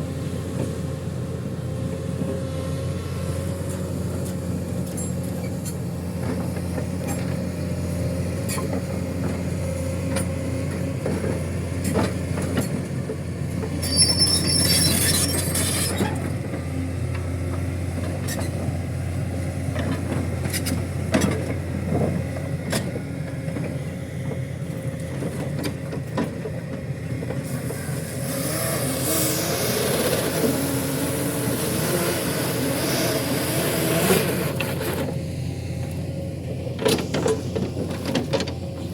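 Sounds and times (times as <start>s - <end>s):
heavy machine engine running: 0.0s - 38.9s
high squeals: 13.8s - 16.0s.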